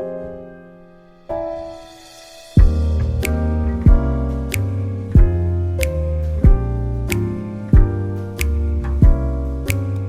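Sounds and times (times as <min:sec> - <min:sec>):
sharp percussion hit: 0:01.5 - 0:05.4
soft keyboard notes: 0:02.5 - 0:10.0
kick drum and bass beat: 0:02.6 - 0:09.9.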